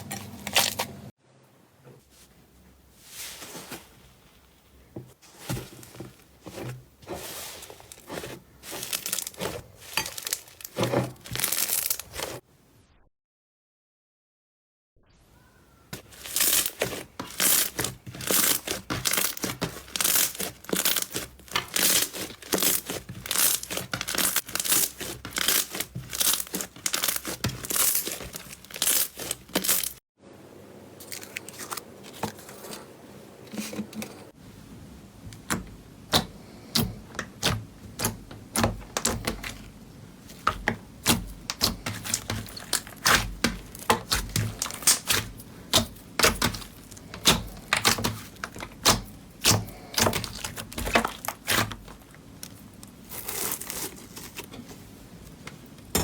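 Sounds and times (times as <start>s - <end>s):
slime crackling and popping: 8.7s - 12.4s, 16.0s - 30.0s, 40.4s - 54.3s.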